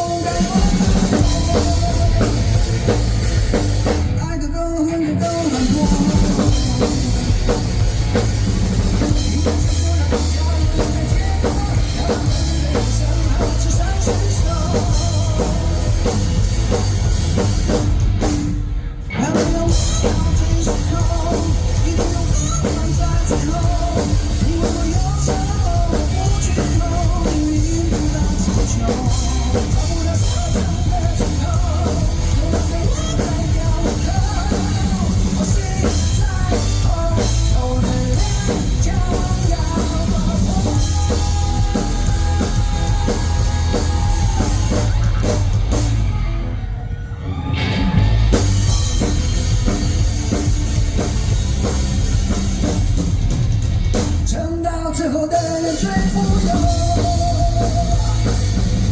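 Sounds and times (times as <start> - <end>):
live rock band playing: 0.0 - 58.9.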